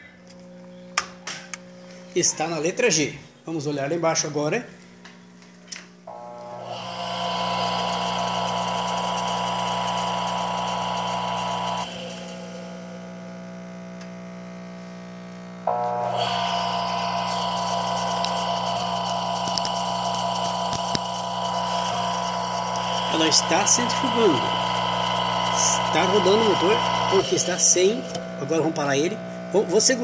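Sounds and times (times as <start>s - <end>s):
washing machine motor hum: 6.1s - 13.2s, 15.7s - 30.0s.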